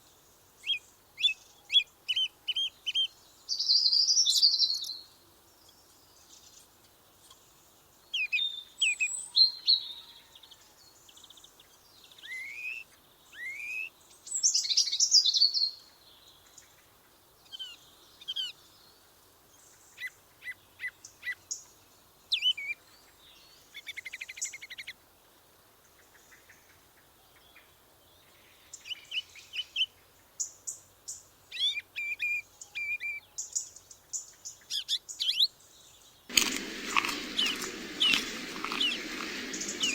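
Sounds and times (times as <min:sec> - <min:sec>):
songbirds chirping and trilling: 0:36.3 - 0:39.9.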